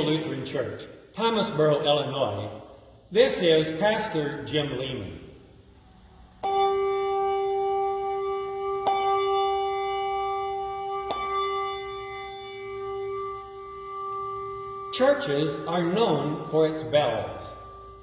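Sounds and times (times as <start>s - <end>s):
church bell ringing: 6.4s - 18.0s.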